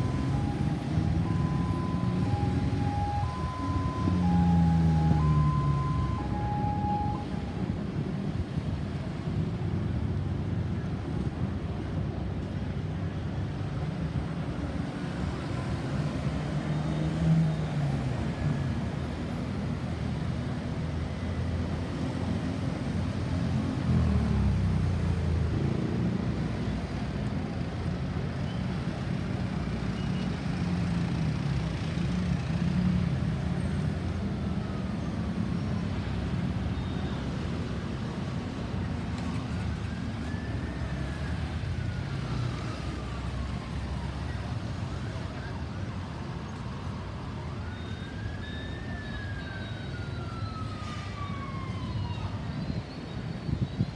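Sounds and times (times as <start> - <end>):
distant siren wailing: 0.0 - 7.8, 39.2 - 52.8
road traffic passing: 0.0 - 9.2.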